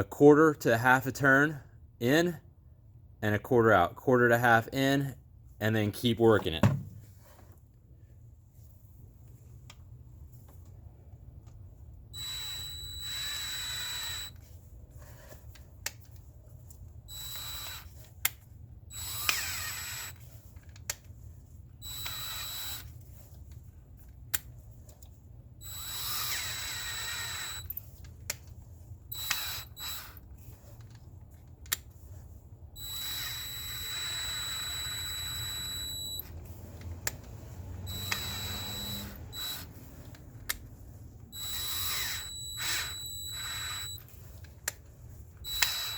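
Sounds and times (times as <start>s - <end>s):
power drill bursts: 12.2s - 14.4s, 17.1s - 18.0s, 18.9s - 20.3s, 21.8s - 22.9s, 25.6s - 27.7s, 29.1s - 30.3s, 32.8s - 36.3s, 37.8s - 39.9s, 41.3s - 44.0s, 45.4s - 45.9s
sharp clicks: 45.5s - 45.9s.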